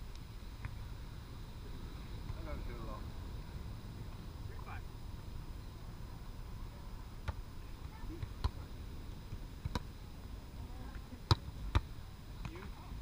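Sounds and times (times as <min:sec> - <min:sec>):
volleyball slaps: 0:09.3 - 0:09.9, 0:10.9 - 0:12.7.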